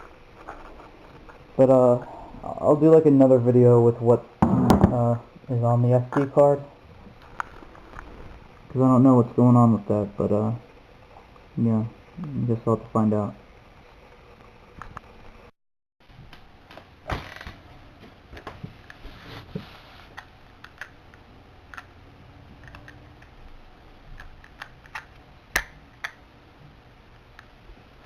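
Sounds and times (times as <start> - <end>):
loud knocks: 4.4 - 5.0.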